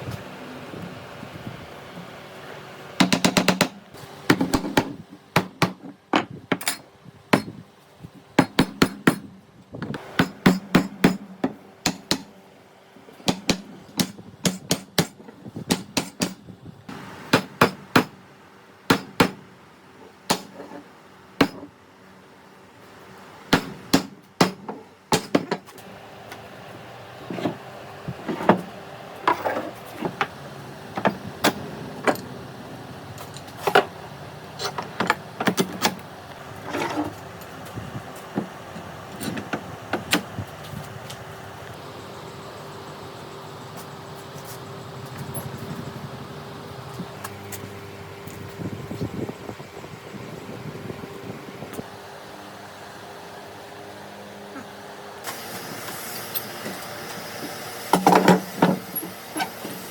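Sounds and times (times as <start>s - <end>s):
hammer striking wood: 3.0s - 5.8s, 10.2s - 12.3s, 17.3s - 18.2s, 18.9s - 19.4s, 20.3s - 20.6s, 23.5s - 25.6s.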